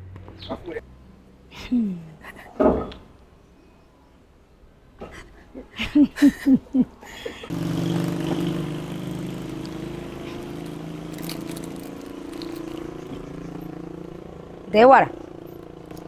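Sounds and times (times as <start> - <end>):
steady engine hum: 7.4 - 16.0.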